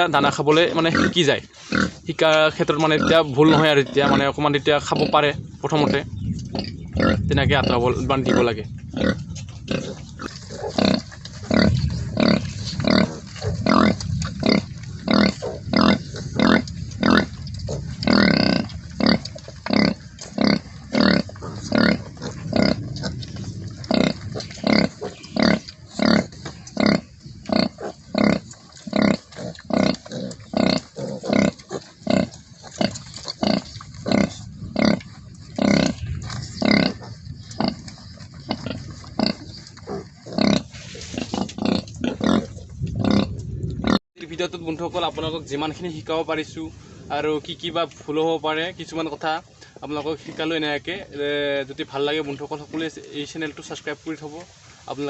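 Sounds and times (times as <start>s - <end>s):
pigs calling: 0.0s - 44.0s.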